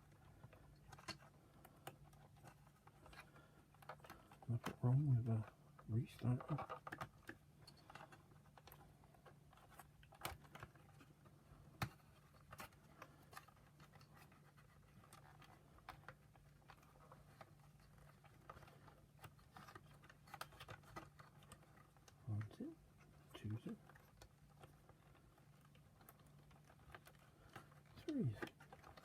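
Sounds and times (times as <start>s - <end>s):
plastic parts clicking and scratching: 0.0s - 29.0s.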